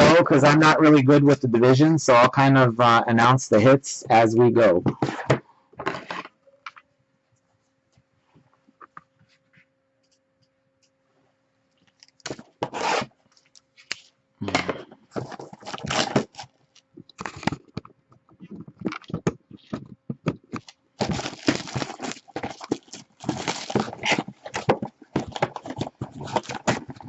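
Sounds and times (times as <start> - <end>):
plastic packaging tearing and crinkling: 15.1 - 17.8, 20.4 - 27.0.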